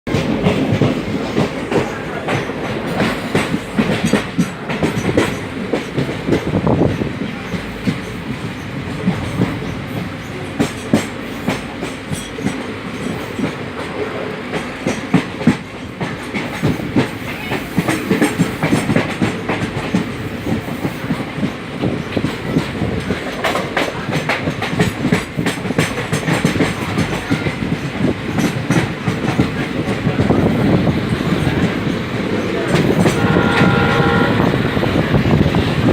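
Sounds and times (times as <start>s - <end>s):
train rumbling on rails: 0.1s - 35.9s
wheels clicking and knocking: 17.8s - 33.3s.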